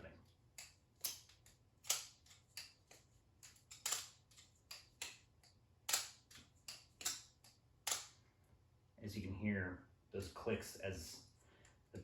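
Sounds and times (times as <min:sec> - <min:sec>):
blade clacking against knuckles: 0:00.5 - 0:08.2
butterfly knife clicking: 0:00.6 - 0:08.1.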